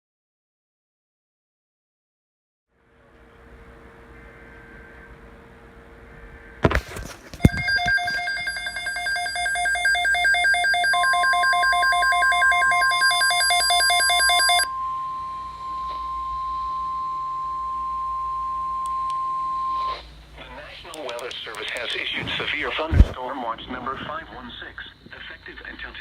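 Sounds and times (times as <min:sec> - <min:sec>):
radio crackle: 0:19.9 - 0:26.0.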